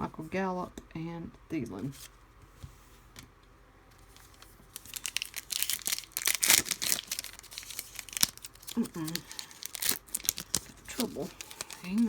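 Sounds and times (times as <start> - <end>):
foil wrapper crinkling and tearing: 4.1 - 12.0.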